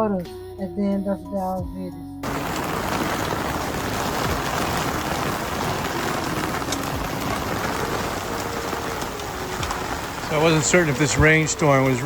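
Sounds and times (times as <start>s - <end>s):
heavy rain on a boat: 2.2s - 12.0s
sharp raindrop ticks: 2.2s - 12.0s.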